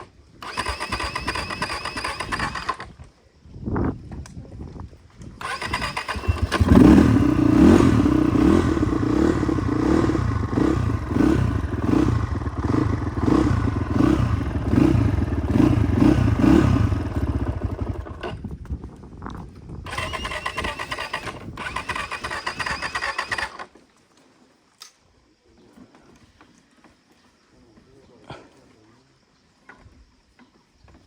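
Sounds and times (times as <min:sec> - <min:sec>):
motorcycle engine running: 0:05.4 - 0:23.6.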